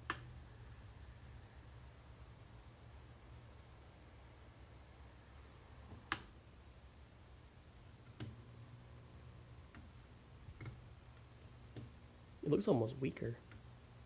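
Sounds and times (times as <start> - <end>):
faint low hum: 0.0 - 14.0
sharp clicks: 6.1 - 6.3, 8.0 - 8.4, 13.4 - 13.7.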